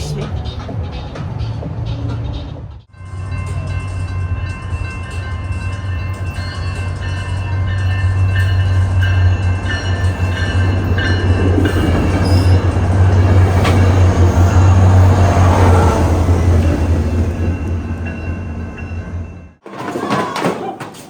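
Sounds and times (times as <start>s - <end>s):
large vehicle humming: 0.0s - 19.6s.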